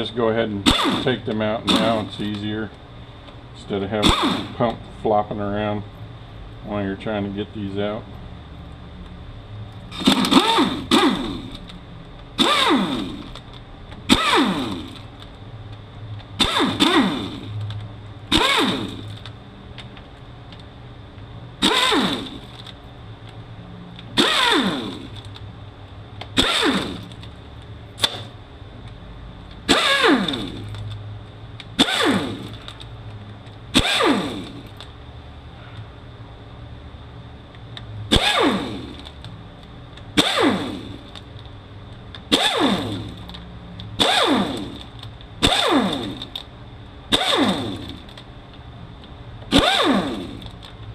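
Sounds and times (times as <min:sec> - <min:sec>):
cordless driver spinning bolts: 0:00.6 - 0:02.4, 0:03.9 - 0:04.8, 0:09.9 - 0:15.4, 0:16.2 - 0:19.4, 0:21.6 - 0:22.8, 0:24.0 - 0:25.5, 0:26.2 - 0:27.4, 0:29.6 - 0:31.0, 0:31.7 - 0:32.9, 0:33.7 - 0:34.9, 0:38.1 - 0:39.4, 0:40.0 - 0:41.4, 0:42.2 - 0:46.5, 0:47.1 - 0:48.3, 0:49.4 - 0:50.8.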